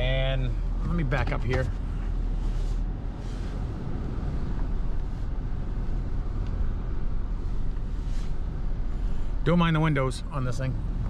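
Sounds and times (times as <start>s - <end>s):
truck engine rumbling: 0.0s - 11.0s.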